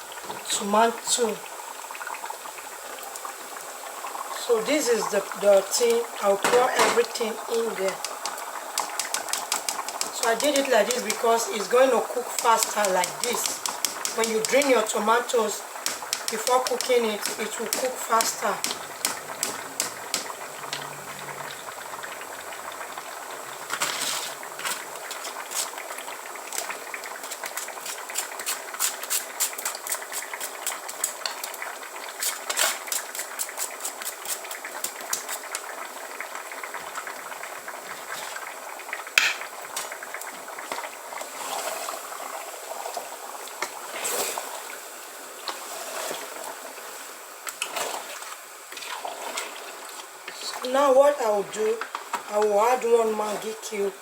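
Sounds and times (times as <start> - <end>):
stew bubbling: 1.7 - 44.0
spoon scraping a pot: 12.3 - 14.8.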